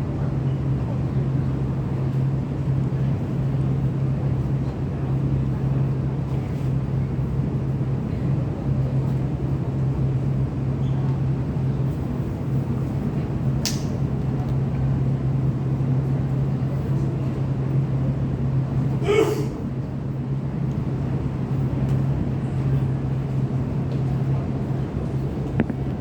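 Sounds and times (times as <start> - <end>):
train hum heard on board: 0.0 - 26.0
sharp click: 13.6 - 14.0.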